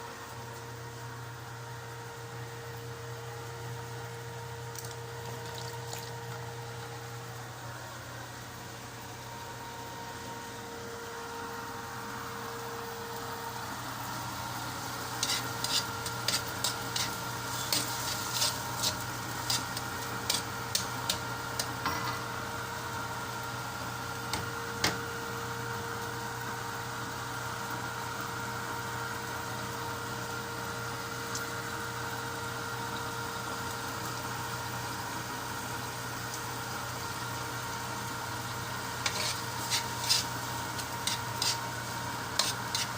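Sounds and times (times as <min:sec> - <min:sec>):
steady low hum: 0:00.0 - 0:26.8
food sizzling in a frying pan: 0:08.8 - 0:42.9
utensil scraping a pan: 0:15.0 - 0:21.7, 0:39.0 - 0:42.9.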